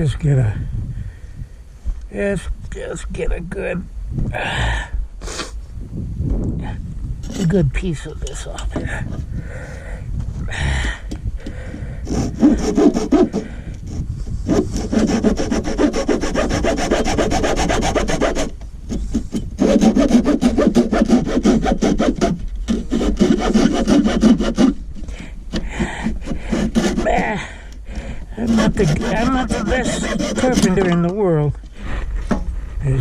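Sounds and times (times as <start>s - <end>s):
hand saw cutting board: 11.4s - 31.2s.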